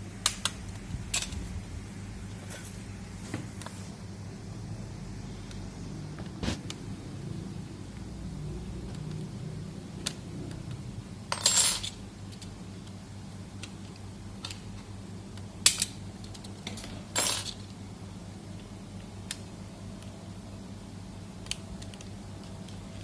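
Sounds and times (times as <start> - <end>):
steady low hum: 0.0 - 23.0
metal pieces clinking and rattling: 11.3 - 12.0, 15.7 - 17.7.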